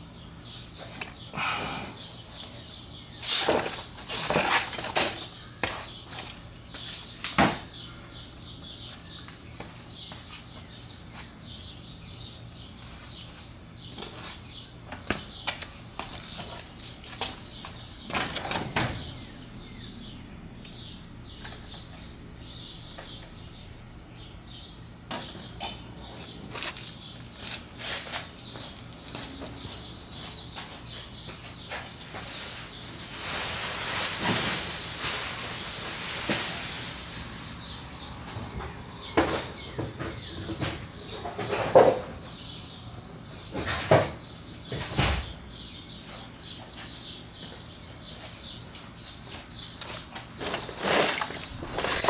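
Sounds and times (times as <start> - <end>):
birds chirping: 0.0 - 52.0.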